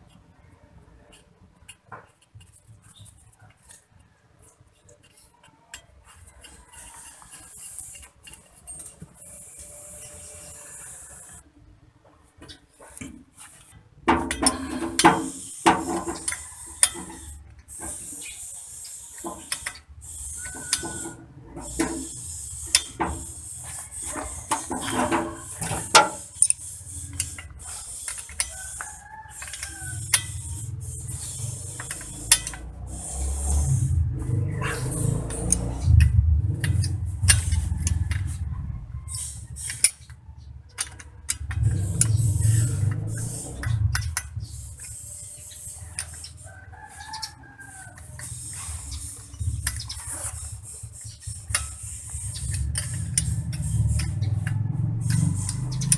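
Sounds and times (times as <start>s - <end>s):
ratchet clicking: 14.1s - 55.9s
rooster crowing: 28.4s - 30.5s, 37.5s - 39.5s, 46.4s - 48.2s.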